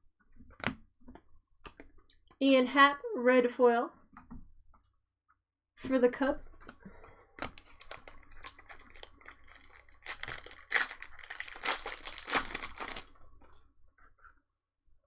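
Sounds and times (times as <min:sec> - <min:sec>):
wrapper tearing and crinkling: 0:07.4 - 0:13.2.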